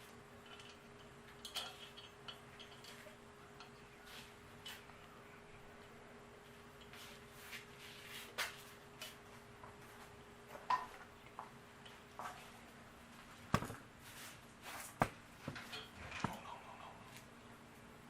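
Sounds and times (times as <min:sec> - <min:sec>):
faint steady hum: 0:00.0 - 0:18.0
small parts clicking and tapping: 0:00.4 - 0:03.8.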